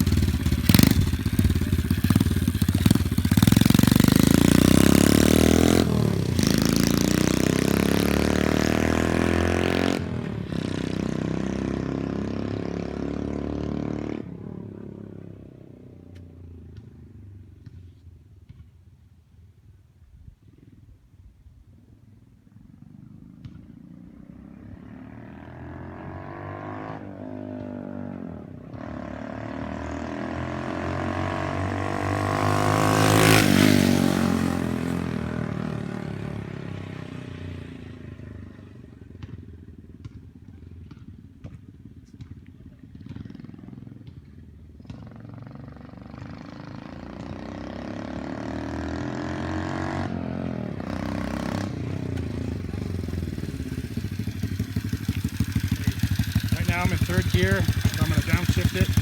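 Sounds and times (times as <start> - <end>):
small motorbike engine passing: 0.0 - 17.9, 22.5 - 41.6, 42.2 - 59.0.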